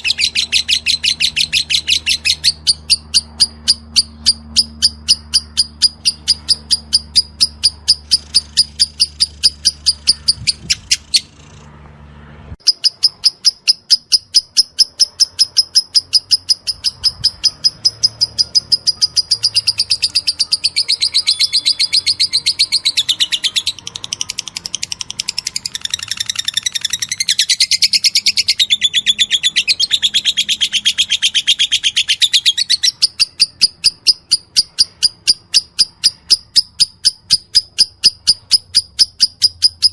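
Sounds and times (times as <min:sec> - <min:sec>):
bird sharp high chirps: 0:00.0 - 0:11.7, 0:12.6 - 0:39.9.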